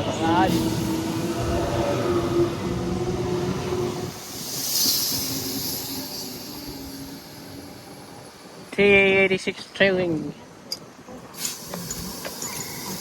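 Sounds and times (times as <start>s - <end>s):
train rail rumble: 0.0s - 13.0s
train air hiss: 0.3s - 2.1s, 3.9s - 8.2s, 11.3s - 13.0s.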